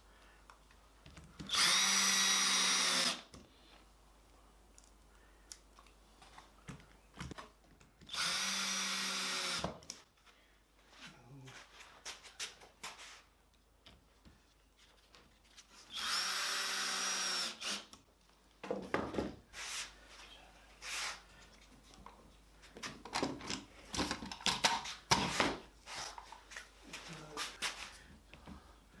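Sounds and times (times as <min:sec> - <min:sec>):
power drill running: 0:01.5 - 0:03.3, 0:08.1 - 0:09.7, 0:15.9 - 0:17.9
tools and wood clattering: 0:22.8 - 0:26.6.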